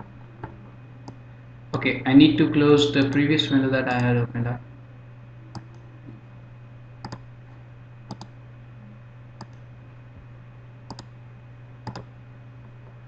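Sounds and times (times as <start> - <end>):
steady low hum: 0.0 - 13.0
computer mouse clicking: 5.5 - 5.8, 7.0 - 7.2, 8.1 - 8.3, 9.4 - 9.6, 10.9 - 11.1, 11.8 - 12.1.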